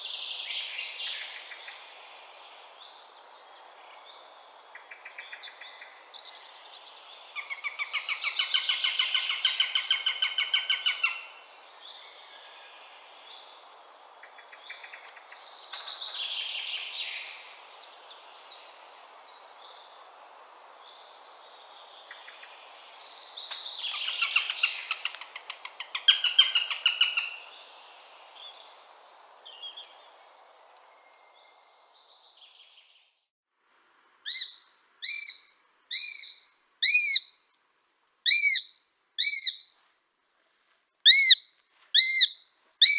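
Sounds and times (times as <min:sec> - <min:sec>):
faint bird calls: 0:21.0 - 0:28.7, 0:38.3 - 0:39.8, 0:41.1 - 0:42.9
hawk chattering call: 0:34.3 - 0:37.3, 0:38.3 - 0:39.6, 0:41.1 - 0:42.9.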